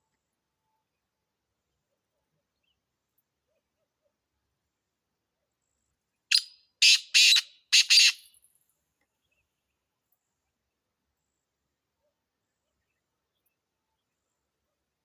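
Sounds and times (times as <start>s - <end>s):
bird calling harsh notes: 6.3s - 8.3s.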